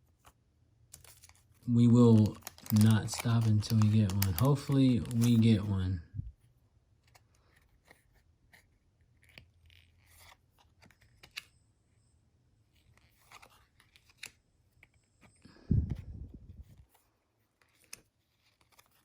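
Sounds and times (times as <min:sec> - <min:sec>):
cards clicking: 0:00.9 - 0:05.8
foil pack crinkling: 0:01.0 - 0:05.8.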